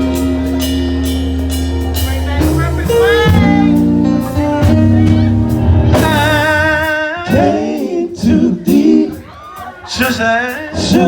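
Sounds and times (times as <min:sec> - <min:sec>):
gospel band playing: 0:00.0 - 0:11.0
man singing with vibrato: 0:02.8 - 0:04.5, 0:05.8 - 0:11.0.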